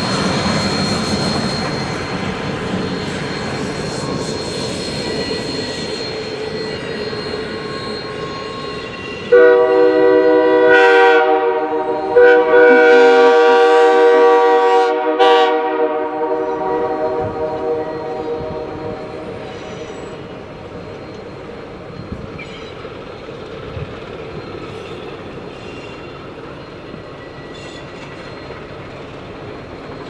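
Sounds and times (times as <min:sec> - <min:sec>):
steam locomotive whistle blasts: 0:00.0 - 0:21.3
train rushing noise: 0:00.0 - 0:30.0.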